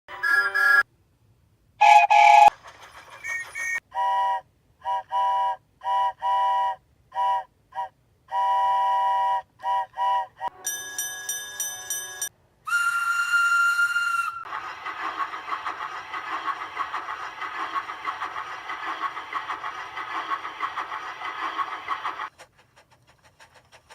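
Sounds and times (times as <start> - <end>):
steam locomotive whistle blasts: 1.8 - 2.5, 3.3 - 10.5, 12.7 - 14.5.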